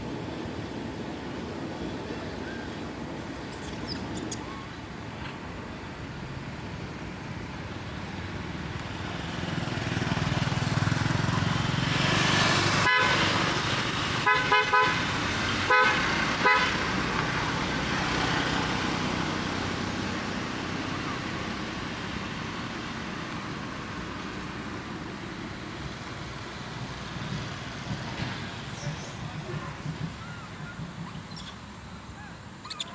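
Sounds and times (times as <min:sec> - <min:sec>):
vehicle passing by: 0:00.0 - 0:32.1
horn honks: 0:08.2 - 0:17.0.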